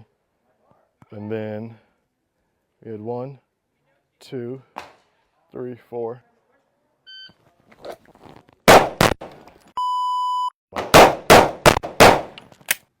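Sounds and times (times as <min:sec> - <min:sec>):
gunshots: 0:08.7 - 0:09.4, 0:10.8 - 0:12.4.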